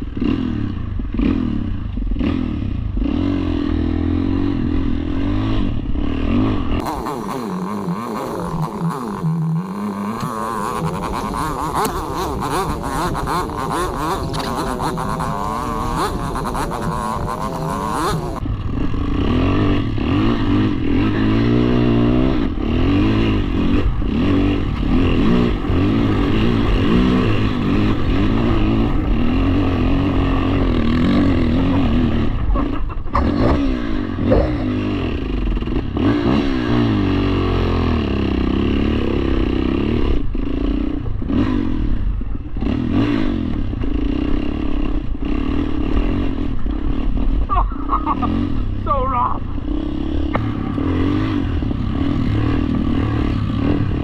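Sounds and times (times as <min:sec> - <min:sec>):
deeper louder engine revving: 0:00.0 - 0:54.0
engine revving: 0:00.0 - 0:54.0.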